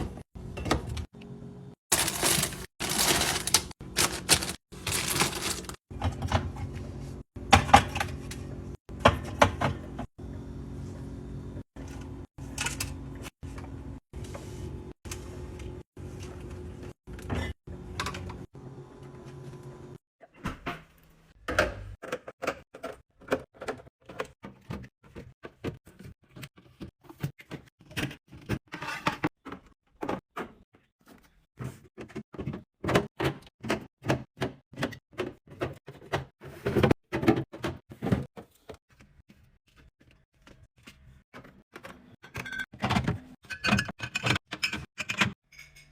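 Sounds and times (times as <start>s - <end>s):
packaged snacks clattering: 1.9s - 5.8s.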